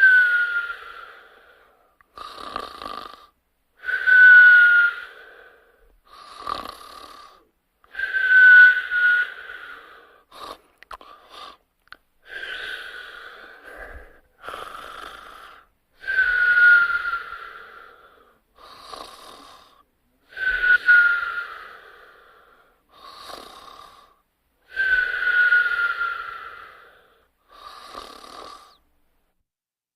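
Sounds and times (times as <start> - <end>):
snoring with whistle: 0.0 - 10.6, 12.2 - 28.8.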